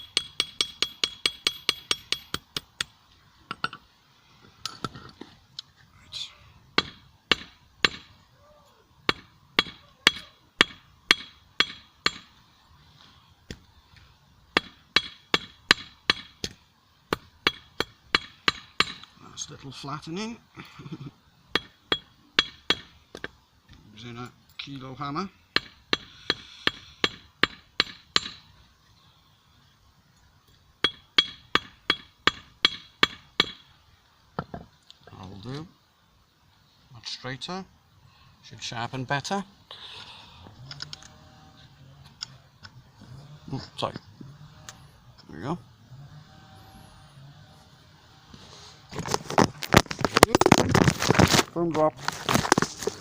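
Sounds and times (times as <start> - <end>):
hammer striking metal on anvil: 0.0 - 2.9, 30.8 - 33.6
hammer striking steel on anvil: 0.0 - 2.9, 9.1 - 12.3, 25.6 - 28.4, 30.8 - 33.6.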